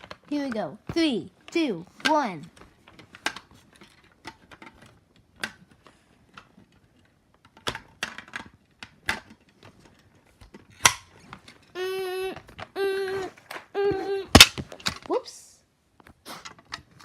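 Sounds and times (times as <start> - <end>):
handling clicks and knocks: 0.0 - 11.6, 14.3 - 15.1.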